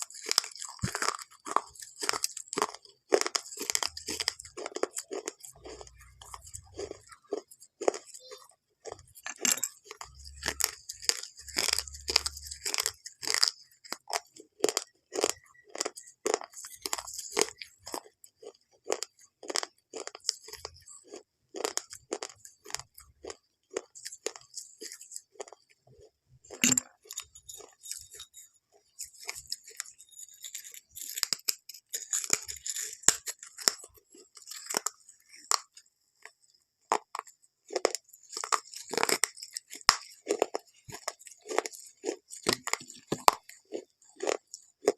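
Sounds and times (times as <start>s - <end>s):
crisp crunches: 0.0s - 8.0s, 37.7s - 44.9s.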